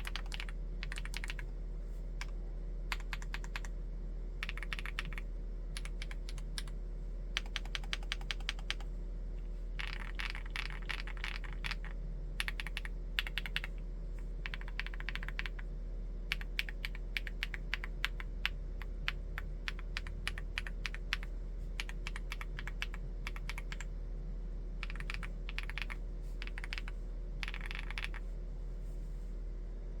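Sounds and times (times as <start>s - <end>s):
mechanical keyboard typing: 0.0s - 1.5s, 2.9s - 3.7s, 4.4s - 5.2s, 5.8s - 6.8s, 7.4s - 8.9s, 9.8s - 13.7s, 14.4s - 15.6s, 16.3s - 23.9s, 24.8s - 28.2s.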